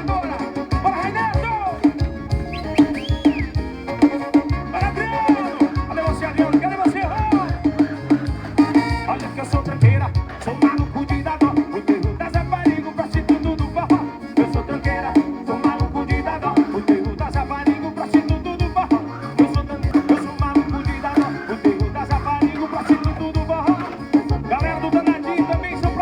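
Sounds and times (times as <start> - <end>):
person singing: 0.0 - 26.0
upbeat latin-style music: 0.0 - 26.0.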